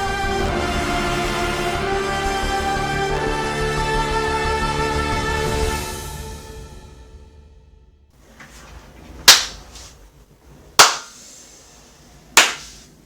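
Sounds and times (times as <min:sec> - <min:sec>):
sharp cracks: 0:09.2 - 0:10.0, 0:10.8 - 0:11.3, 0:12.4 - 0:12.9.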